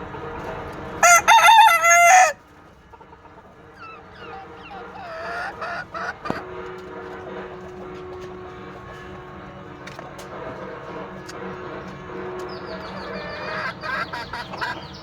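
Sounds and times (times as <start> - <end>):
rooster crowing: 1.0 - 2.4.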